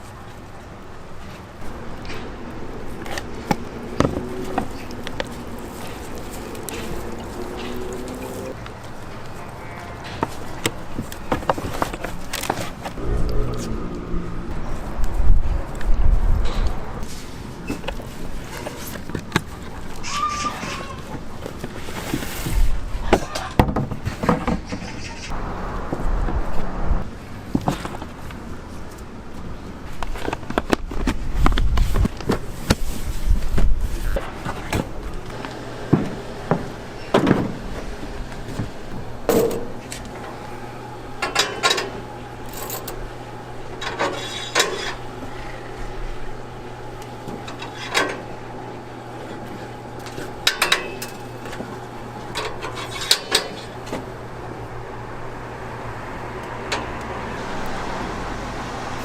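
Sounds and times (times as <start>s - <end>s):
steady low hum: 0.0s - 20.0s, 31.2s - 59.0s
dishes and utensils clattering: 43.8s - 45.0s, 50.4s - 51.6s.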